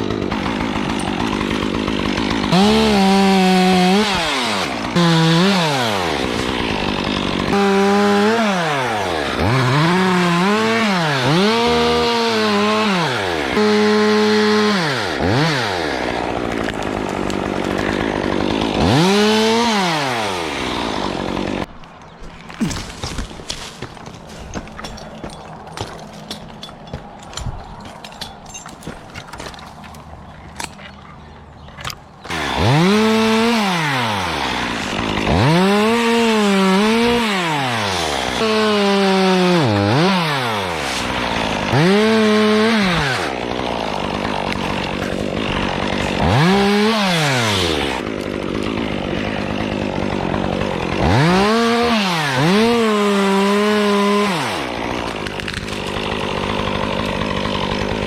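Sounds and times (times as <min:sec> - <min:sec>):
chainsaw revving: 0:00.0 - 0:21.7, 0:31.5 - 0:58.0.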